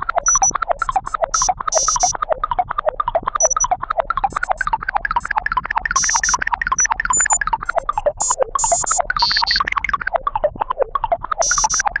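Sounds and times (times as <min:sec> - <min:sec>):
electronic synth blips: 0:00.1 - 0:02.1, 0:03.4 - 0:03.7, 0:04.3 - 0:05.3, 0:06.0 - 0:09.7.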